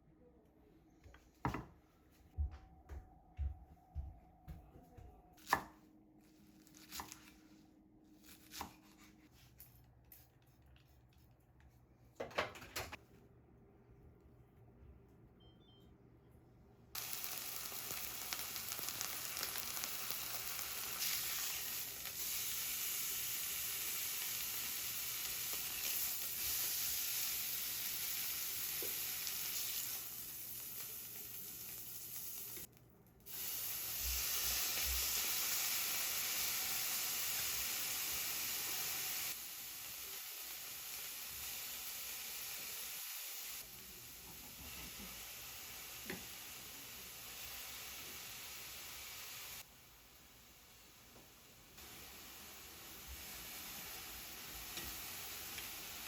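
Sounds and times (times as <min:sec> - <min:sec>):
food sizzling in a frying pan: 0:17.0 - 0:32.7, 0:33.3 - 0:56.0.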